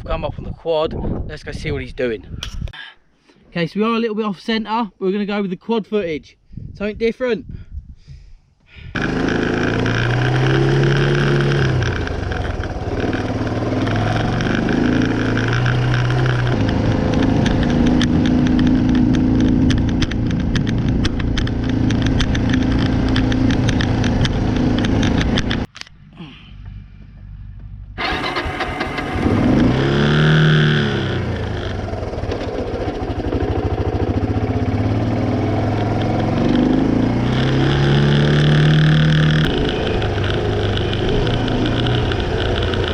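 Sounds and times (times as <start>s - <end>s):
quad bike engine revving: 9.0s - 25.7s, 28.0s - 42.9s.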